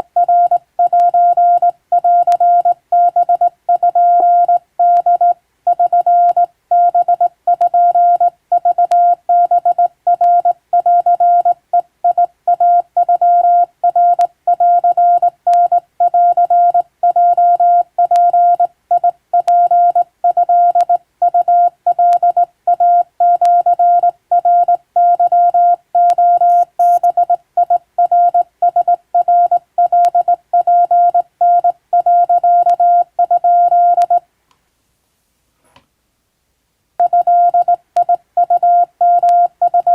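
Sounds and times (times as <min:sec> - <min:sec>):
morse code beeps: 0:12.1 - 0:34.2, 0:37.0 - 0:39.9.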